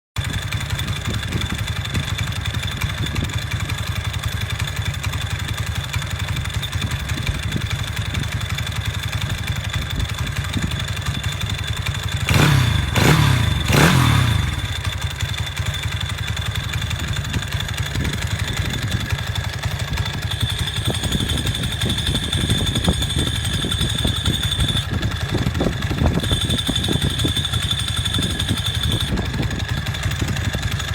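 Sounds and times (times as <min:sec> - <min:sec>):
motorcycle engine idling and revving: 0:00.2 - 0:30.9
metallic jingling rattle: 0:19.6 - 0:24.9, 0:25.7 - 0:29.2.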